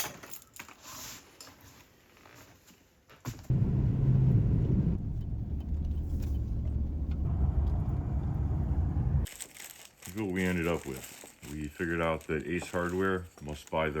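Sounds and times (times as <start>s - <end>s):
car driving rumble: 3.5s - 9.3s.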